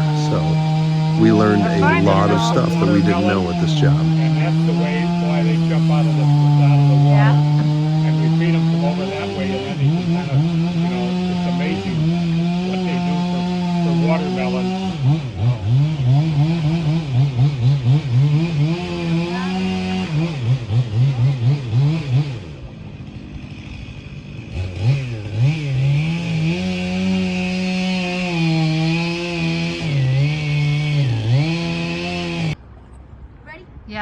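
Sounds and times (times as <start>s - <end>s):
chainsaw revving: 23.5s - 32.5s.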